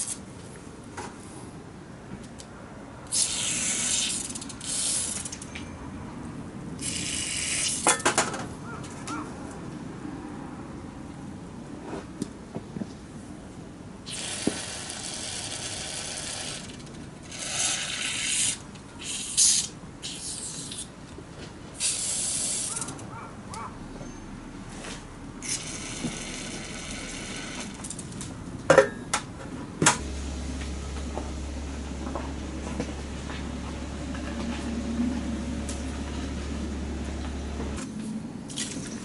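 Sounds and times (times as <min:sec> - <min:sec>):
hissing spray bursts: 0:03.1 - 0:05.3, 0:06.8 - 0:07.9, 0:14.1 - 0:16.7, 0:17.3 - 0:20.9, 0:21.8 - 0:23.0.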